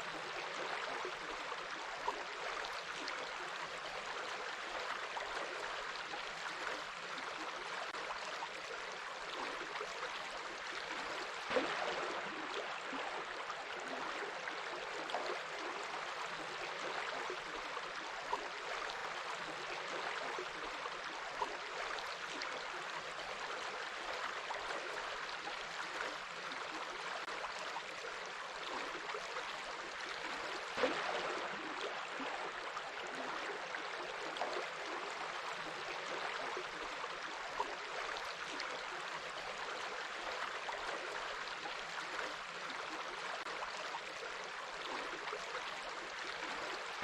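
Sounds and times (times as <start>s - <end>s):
water splashing and gurgling: 11.4s - 15.7s, 30.3s - 34.8s.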